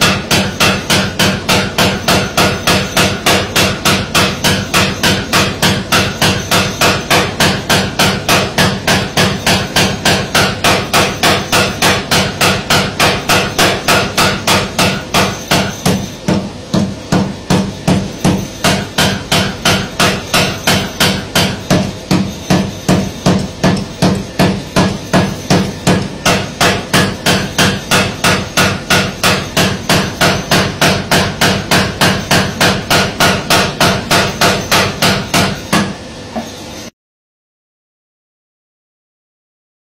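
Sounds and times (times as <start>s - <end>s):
power hammer striking: 0.0s - 36.9s.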